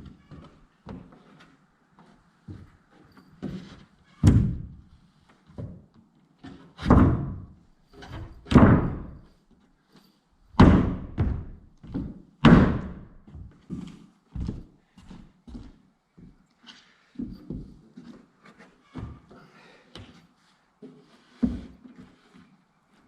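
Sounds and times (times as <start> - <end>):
heavy thunks: 10.6 - 13.2.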